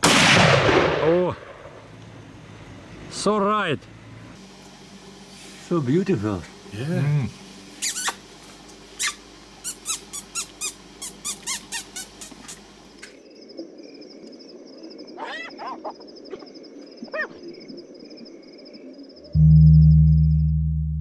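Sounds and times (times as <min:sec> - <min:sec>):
high pulsing trill: 0:19.4 - 0:21.0
loud low steady tone: 0:19.4 - 0:21.0.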